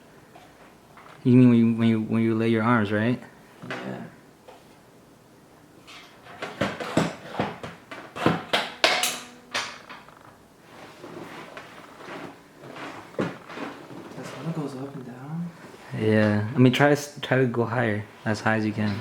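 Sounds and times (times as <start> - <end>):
chair clicks and clunks: 0.4 - 1.3, 5.8 - 15.3
handling noise: 5.8 - 15.8.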